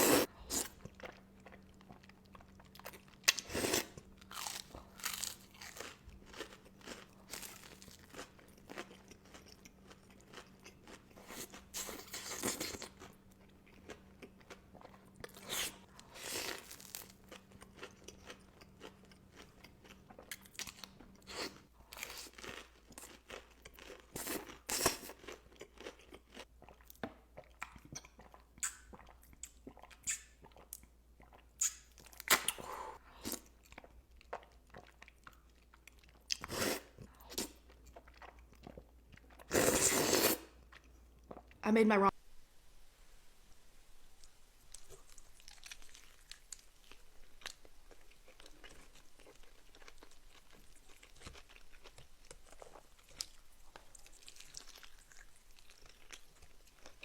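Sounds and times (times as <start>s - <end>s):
crunchy bites and chewing: 0.0s - 26.4s.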